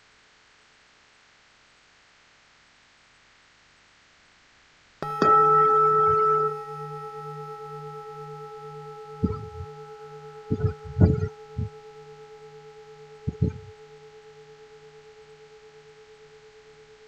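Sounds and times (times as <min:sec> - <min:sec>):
pulsing low hum: 0:05.0 - 0:17.0
temple bell ringing: 0:05.0 - 0:17.0
dull low thumps: 0:10.5 - 0:11.8, 0:13.3 - 0:13.7.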